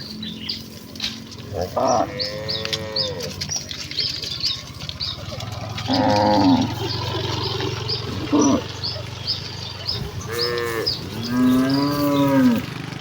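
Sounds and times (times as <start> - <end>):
cattle mooing: 1.4 - 13.0.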